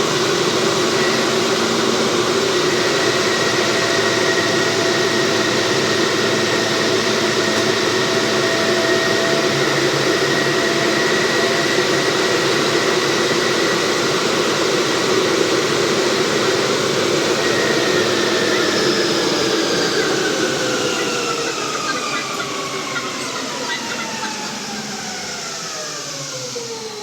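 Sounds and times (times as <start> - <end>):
train running noise: 0.0 - 27.0
high whining tones: 16.2 - 27.0.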